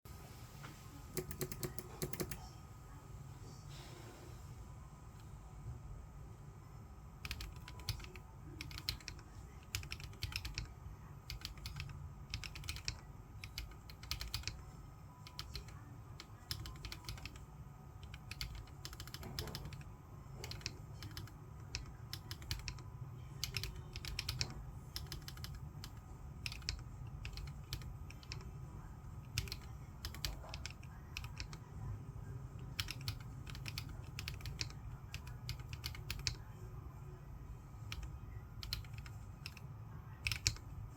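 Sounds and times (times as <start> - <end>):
mechanical keyboard typing: 1.2 - 2.4, 7.2 - 28.6, 29.2 - 31.7, 32.6 - 36.5, 37.8 - 40.8.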